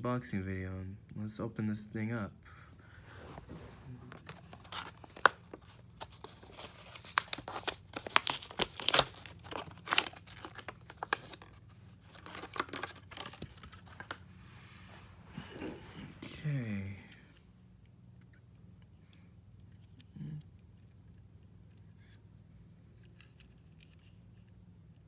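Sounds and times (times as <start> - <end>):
packaging tearing and crinkling: 4.1 - 14.2.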